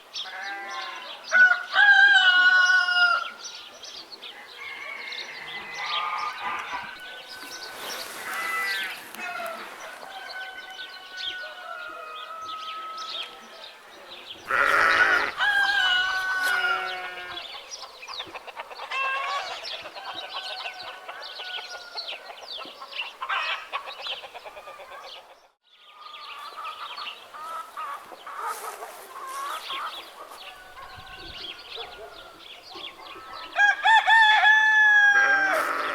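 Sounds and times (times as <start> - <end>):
rooster crowing: 0.4 - 3.4, 4.4 - 13.4, 14.5 - 17.5, 33.6 - 35.9
small birds chirping: 3.3 - 11.4, 12.2 - 33.6
fowl calls: 4.6 - 13.0, 14.5 - 17.5, 22.8 - 25.4, 26.4 - 32.4, 33.2 - 35.9.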